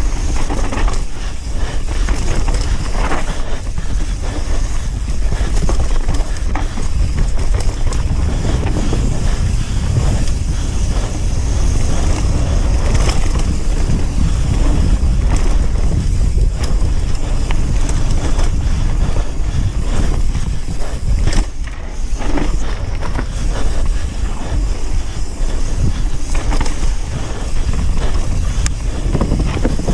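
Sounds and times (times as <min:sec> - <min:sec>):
wind buffeting microphone: 0:00.0 - 0:29.9
tyres rumbling over dirt and stones: 0:05.5 - 0:18.6.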